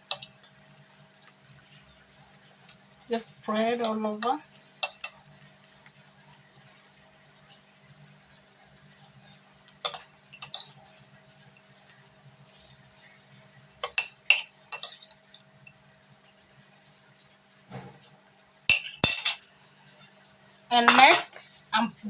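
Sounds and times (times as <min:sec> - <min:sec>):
utensil clinking against a dish: 0:00.0 - 0:02.0, 0:03.8 - 0:05.4, 0:09.6 - 0:11.9, 0:13.8 - 0:15.8, 0:18.7 - 0:20.1, 0:20.7 - 0:21.5.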